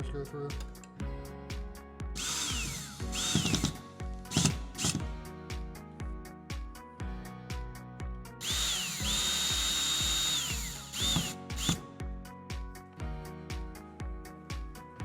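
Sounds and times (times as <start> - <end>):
background music with steady beat: 0.0 - 15.0
power drill whirring: 2.2 - 5.0, 8.4 - 11.8.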